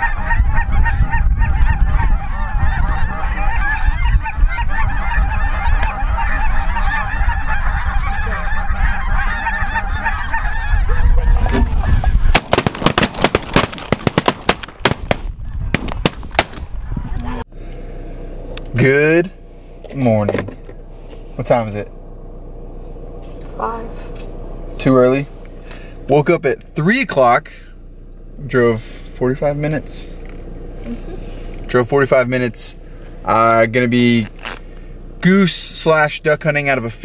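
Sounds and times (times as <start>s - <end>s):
geese honking: 0.0s - 17.5s
low rumble: 0.0s - 35.2s
sharp bangs: 11.5s - 16.9s.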